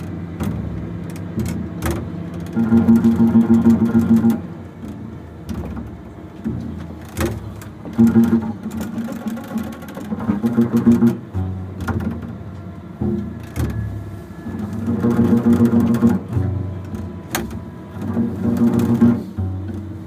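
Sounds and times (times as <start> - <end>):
double bass improvising: 0.0 - 20.0
knocks on double bass: 10.1 - 14.0.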